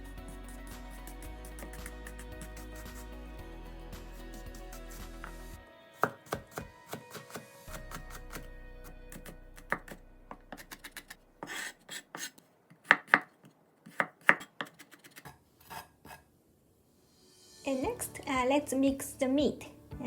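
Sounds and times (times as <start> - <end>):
knife chopping on board: 6.0 - 8.5, 9.1 - 13.3.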